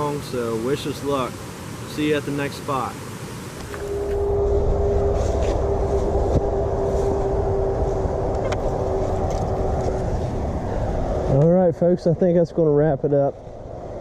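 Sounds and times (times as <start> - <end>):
car road and engine rumble: 3.5 - 14.0.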